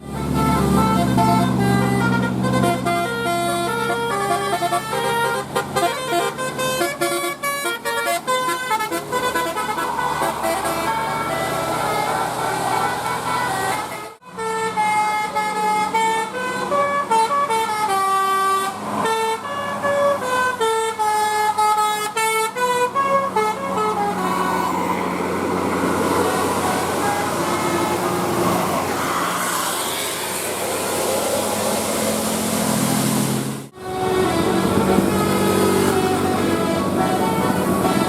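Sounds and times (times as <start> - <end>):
bus horn playing a tune: 0.0 - 29.2, 29.9 - 38.0.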